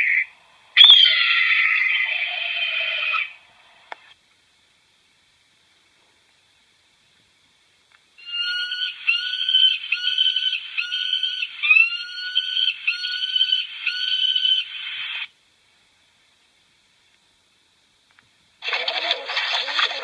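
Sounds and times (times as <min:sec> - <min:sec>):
bird call notes: 0:00.0 - 0:03.3, 0:08.2 - 0:14.8.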